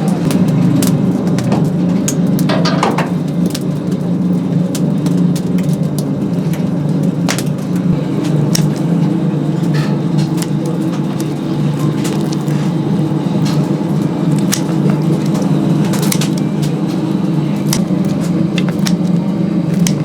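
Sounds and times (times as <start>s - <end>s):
firewood crackling and popping: 0.0s - 20.0s
steady low hum: 0.0s - 20.0s.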